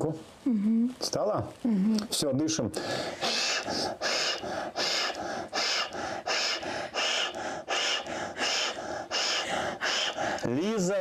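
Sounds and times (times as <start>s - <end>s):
person breathing hard: 2.7s - 10.5s.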